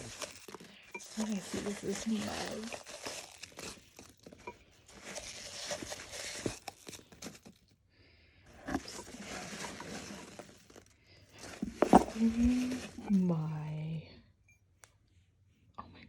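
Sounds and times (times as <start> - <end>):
paper packaging rustling: 0.0 - 7.7, 8.5 - 13.4.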